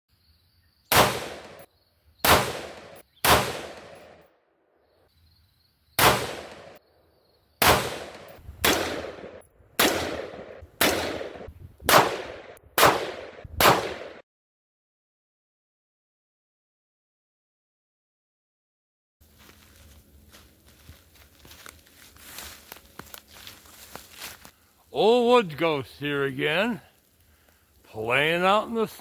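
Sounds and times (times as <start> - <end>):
rifle single shots echoing: 0.9 - 4.3, 6.0 - 6.8, 7.6 - 14.2.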